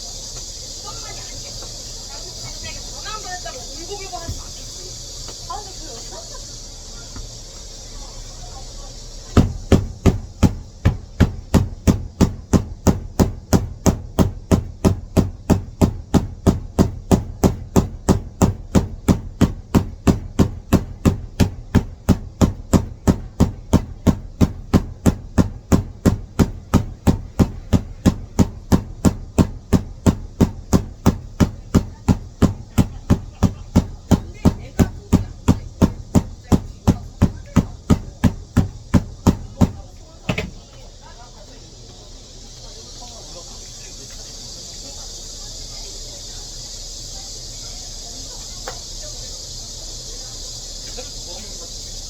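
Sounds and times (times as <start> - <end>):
hammer tapping on sandal sole: 9.4 - 40.6.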